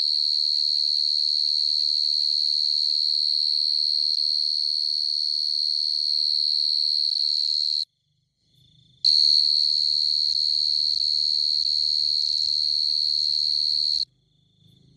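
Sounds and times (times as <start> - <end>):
cricket trilling: 0.0 - 5.1, 9.1 - 14.0.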